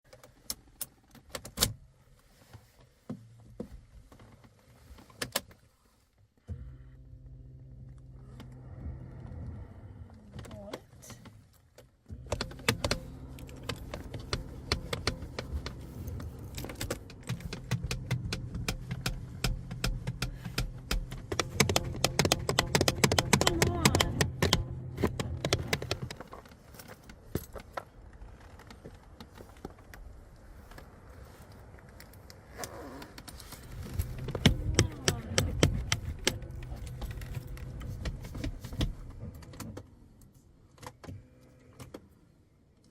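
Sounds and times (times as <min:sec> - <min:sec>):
starter whine: 0:06.4 - 0:10.5, 0:12.0 - 0:27.4, 0:32.6 - 0:39.8
car engine cranking: 0:06.4 - 0:29.8, 0:32.4 - 0:42.2
sharp metallic clicks and rattles: 0:11.0 - 0:28.0, 0:33.2 - 0:39.9.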